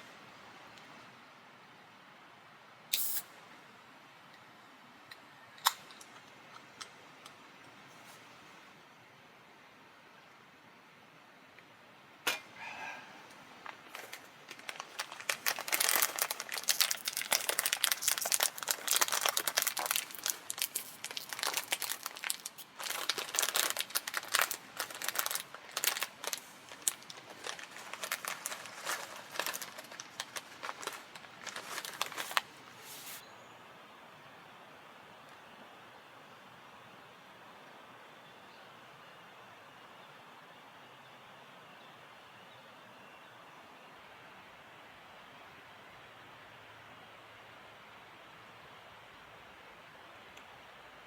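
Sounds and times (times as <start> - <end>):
crinkling and rustling: 13.6 - 33.2.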